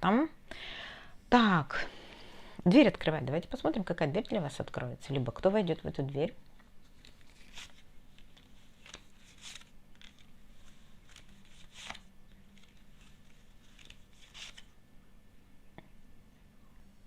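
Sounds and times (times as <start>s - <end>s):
cards rustling and snapping: 6.8s - 14.7s.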